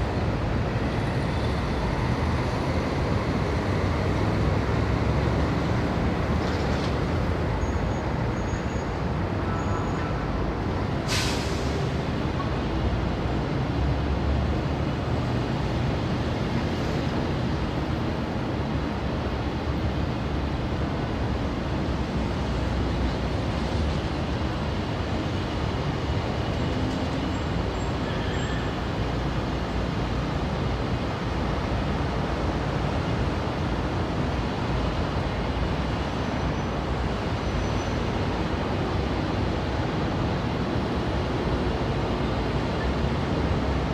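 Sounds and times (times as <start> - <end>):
street traffic: 0.0 - 43.9
sudden sharp hiss: 11.0 - 11.8.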